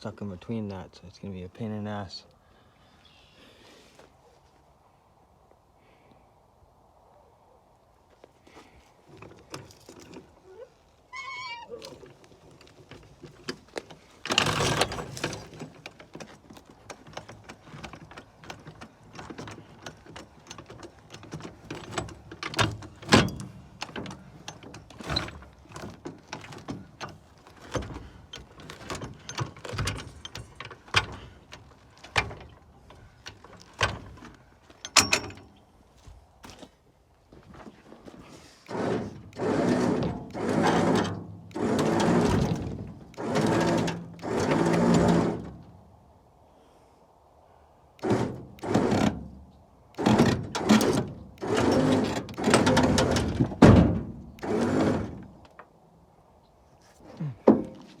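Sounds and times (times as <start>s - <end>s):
short squeak: 11.1s - 12.0s
rough scraping clatter: 11.8s - 35.5s, 37.4s - 45.8s, 48.0s - 55.6s
heavy scrap knocks and scrapes: 37.7s - 45.6s, 48.0s - 49.3s, 50.0s - 55.4s.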